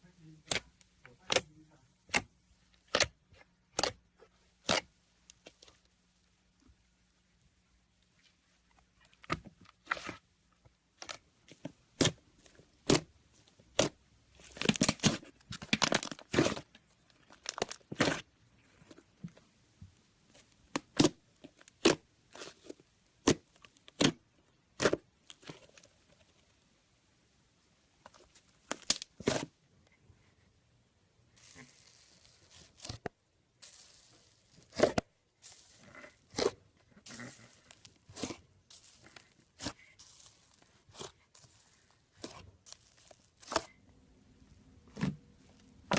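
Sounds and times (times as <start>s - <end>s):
slime popping and crackling: 13.7s - 18.3s, 20.7s - 24.2s, 42.1s - 43.8s.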